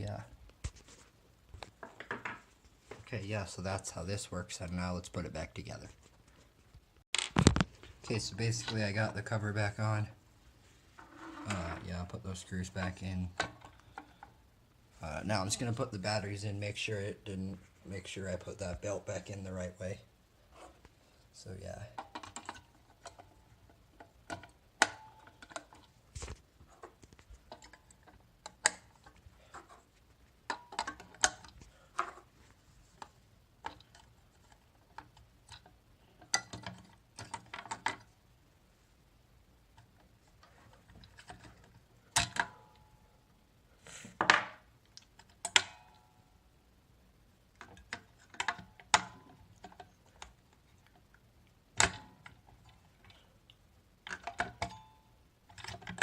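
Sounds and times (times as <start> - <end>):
small parts clicking and knocking: 1.6 - 3.0, 7.1 - 7.7, 21.7 - 32.3, 33.0 - 38.2, 47.4 - 56.0.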